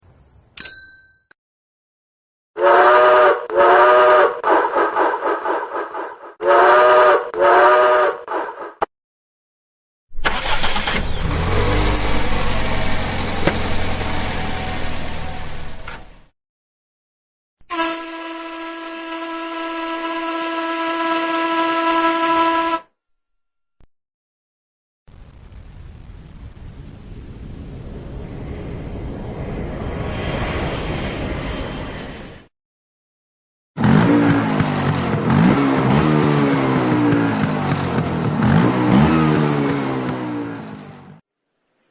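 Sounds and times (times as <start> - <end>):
steam locomotive whistle: 2.6 - 4.6, 6.4 - 8.3, 17.6 - 22.9.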